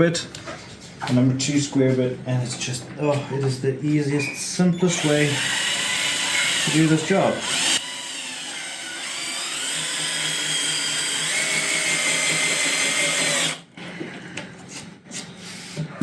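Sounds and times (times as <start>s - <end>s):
drill motor whining: 4.9s - 14.0s.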